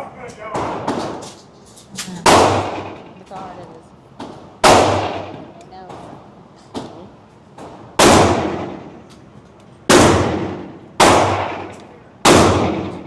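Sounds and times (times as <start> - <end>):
faint gunshots: 2.2 - 3.2, 4.6 - 5.5, 8.0 - 9.0, 9.9 - 13.0
loud pistol shots echoing: 2.2 - 3.2, 4.6 - 5.5, 8.0 - 9.0, 9.9 - 13.0.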